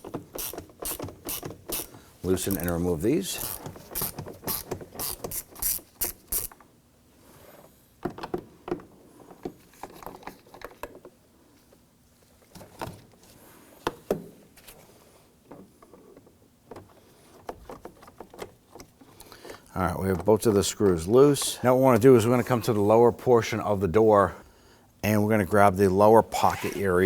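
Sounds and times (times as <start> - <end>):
ratchet pawl clicking: 0.3 - 1.9, 3.4 - 6.5.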